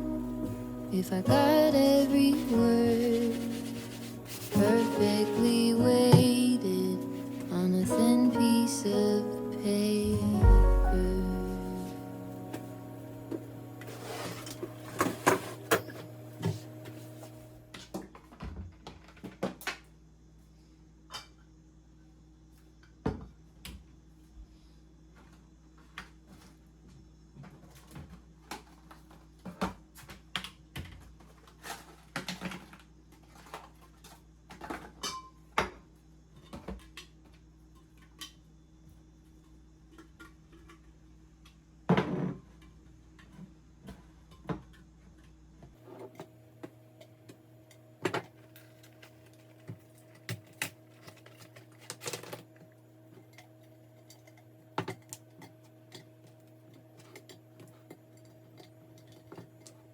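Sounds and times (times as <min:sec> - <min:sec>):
low hum: 0:00.0 - 0:17.7.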